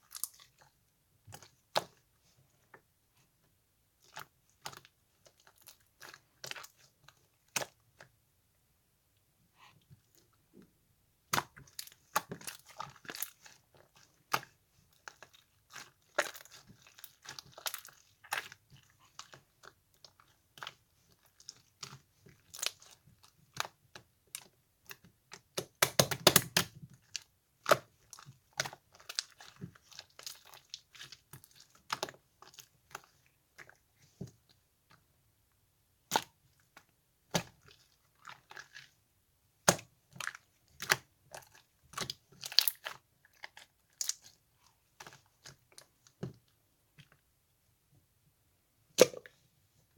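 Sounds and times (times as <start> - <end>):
slime squished by hand: 11.2 - 34.3, 36.0 - 39.0, 39.6 - 46.5, 48.9 - 49.4.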